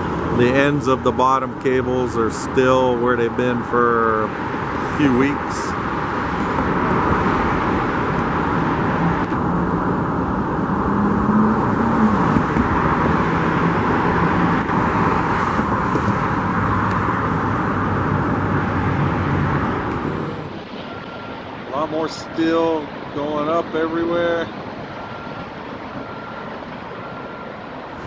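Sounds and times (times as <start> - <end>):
vehicles driving past: 0.0 - 28.0.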